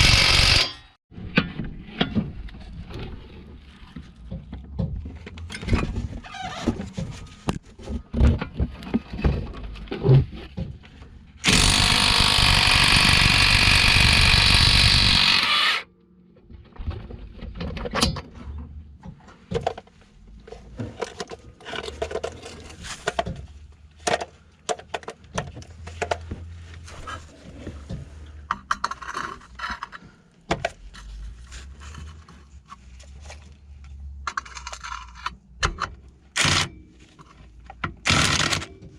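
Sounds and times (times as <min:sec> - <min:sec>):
impact wrench hammering: 0:00.0 - 0:00.9, 0:11.4 - 0:15.8.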